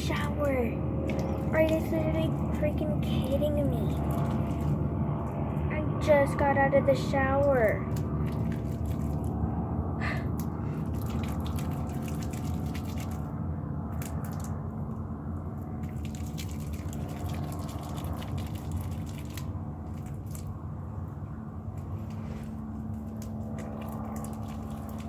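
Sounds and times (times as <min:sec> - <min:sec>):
steady low hum: 0:00.0 - 0:25.0
wet slime squishing: 0:10.4 - 0:13.3, 0:22.1 - 0:25.0.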